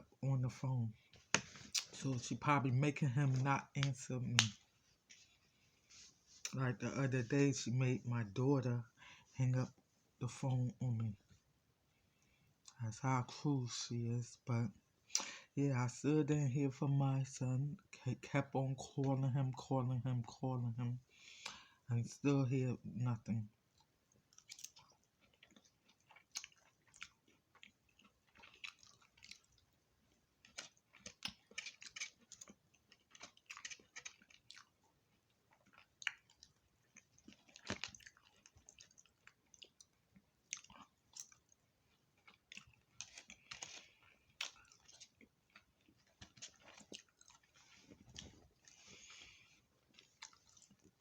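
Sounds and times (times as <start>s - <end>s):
person chewing crunchy food: 23.7s - 51.0s.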